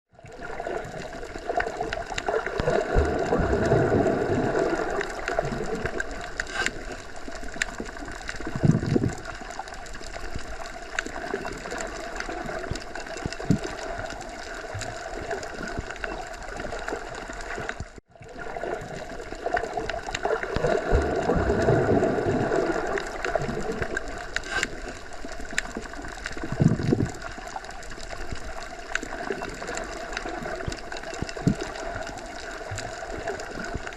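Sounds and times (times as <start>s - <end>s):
small underwater clicks: 0.2s - 33.9s.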